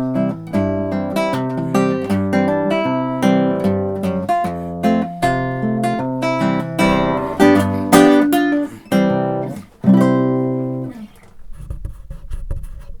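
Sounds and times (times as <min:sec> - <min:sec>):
acoustic guitar: 0:00.0 - 0:12.8
faint rustling: 0:04.0 - 0:13.0.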